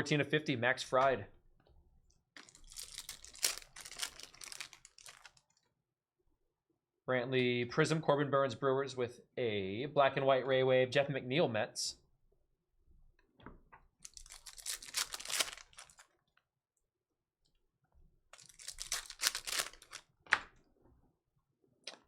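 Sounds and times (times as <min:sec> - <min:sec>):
foil wrappers tearing and crinkling: 0:02.4 - 0:05.5, 0:14.1 - 0:16.1, 0:18.4 - 0:20.0.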